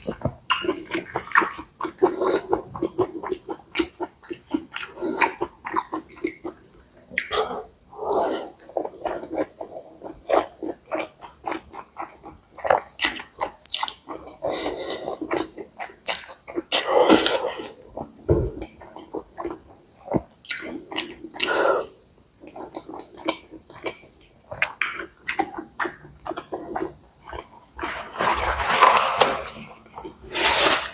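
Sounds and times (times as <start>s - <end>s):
wet chewing and lip smacks: 0.0s - 7.4s, 22.4s - 27.6s.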